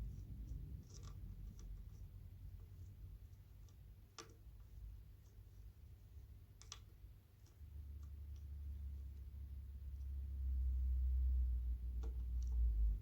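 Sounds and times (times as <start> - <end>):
clicks and taps of fan parts: 0.4 - 2.1, 3.6 - 4.7, 6.5 - 8.8, 11.9 - 12.7.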